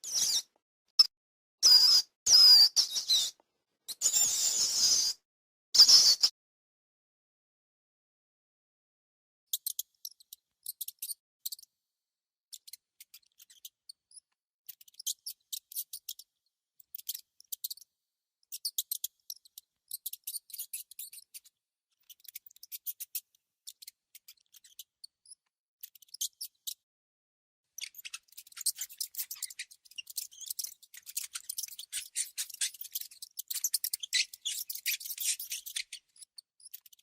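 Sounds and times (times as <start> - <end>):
mouse squeaks: 0.0 - 5.2, 5.8 - 6.3, 9.5 - 11.7, 12.5 - 26.9, 27.7 - 37.0
mouse clicking rapidly: 27.8 - 37.0.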